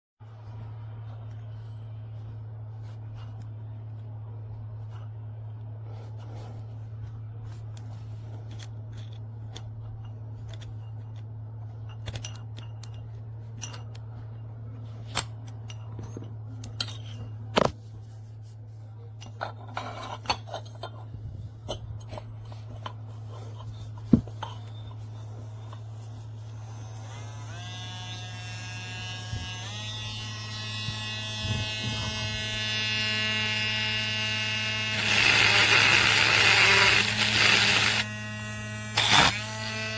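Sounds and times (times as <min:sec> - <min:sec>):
rotary tool motor humming: 0:26.4 - 0:39.9.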